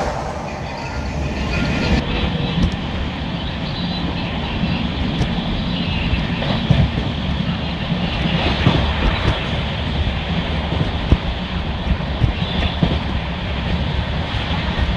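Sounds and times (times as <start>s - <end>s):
rushing air: 0.0s - 2.0s
train wheels rumbling on rails: 0.0s - 14.9s.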